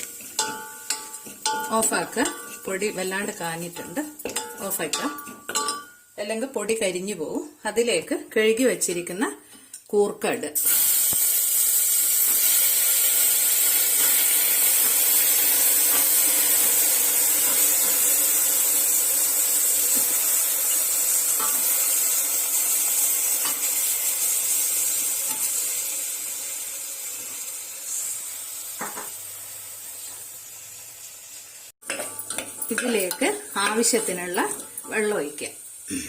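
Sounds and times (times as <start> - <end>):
tubers sizzling in hot oil: 0.0 - 7.0, 10.6 - 35.9.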